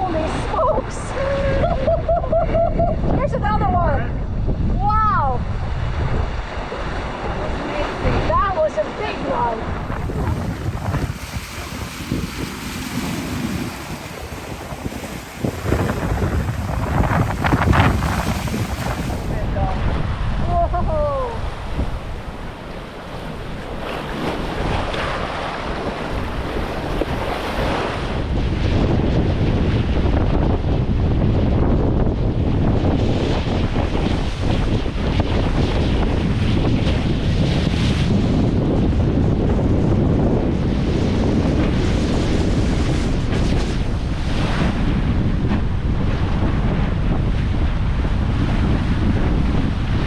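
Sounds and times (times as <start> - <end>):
wind buffeting microphone: 0.0 - 50.0
ocean waves breaking: 5.1 - 28.3.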